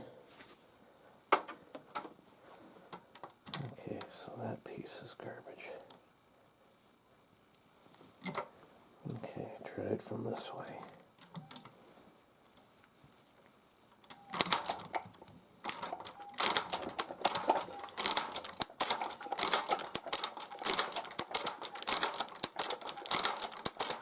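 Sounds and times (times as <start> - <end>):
sewing machine clacking: 14.3 - 15.0, 15.6 - 24.0.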